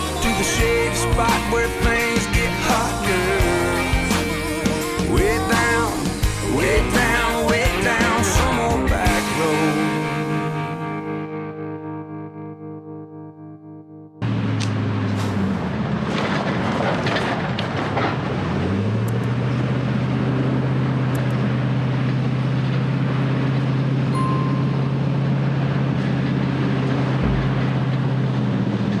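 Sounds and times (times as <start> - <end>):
vehicle engine drone: 0.0 - 11.0, 14.2 - 29.0
tyre and road noise: 14.2 - 29.0
sharp clicks: 19.0 - 19.4, 21.2 - 21.5.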